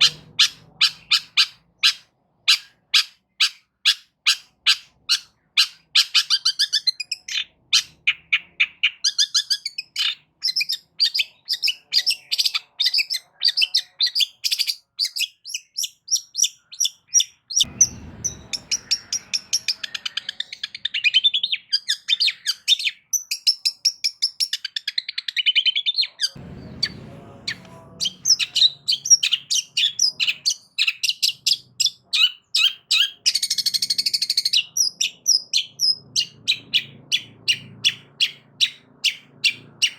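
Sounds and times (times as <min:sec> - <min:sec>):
bird singing chattering song: 0:00.0 - 0:39.9
short low rumbles: 0:26.4 - 0:28.4.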